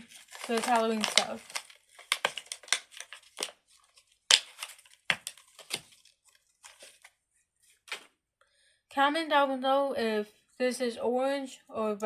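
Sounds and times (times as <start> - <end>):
crinkling and rustling: 0.0 - 8.2.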